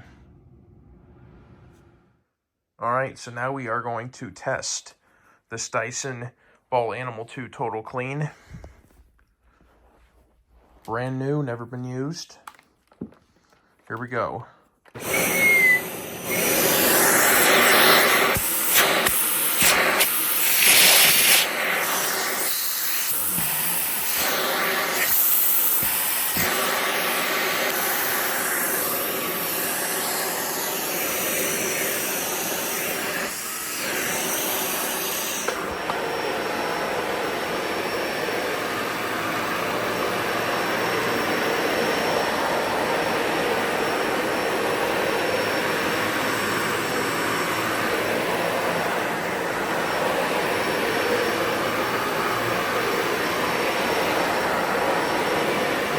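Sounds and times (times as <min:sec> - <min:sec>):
vacuum cleaner running: 0:14.9 - 0:55.9.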